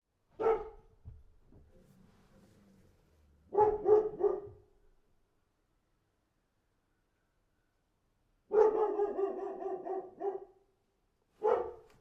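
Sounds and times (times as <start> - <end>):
dog barking: 0.4 - 1.0, 3.5 - 4.7, 8.5 - 10.7, 11.4 - 11.9.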